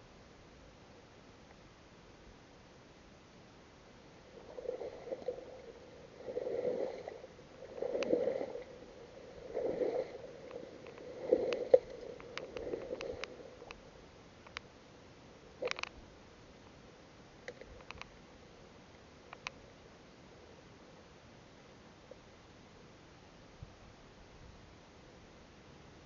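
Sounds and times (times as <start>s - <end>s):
water sloshing: 4.4s - 13.7s.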